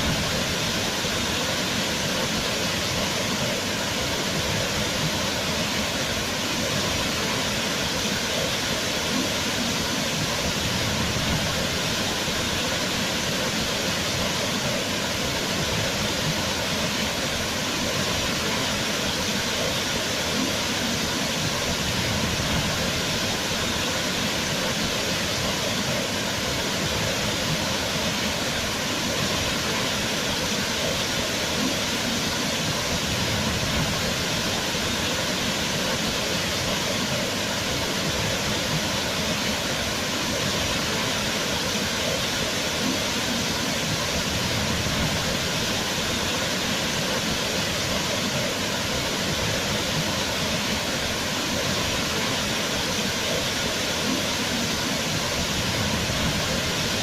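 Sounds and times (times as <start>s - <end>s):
waterfall rushing: 0.0s - 57.0s.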